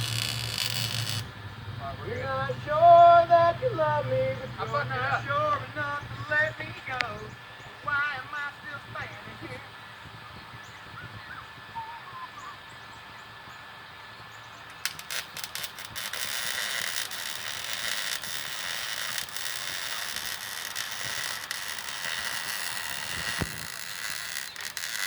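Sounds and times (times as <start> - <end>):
welding arc crackling: 0.0 - 1.3, 14.6 - 25.0.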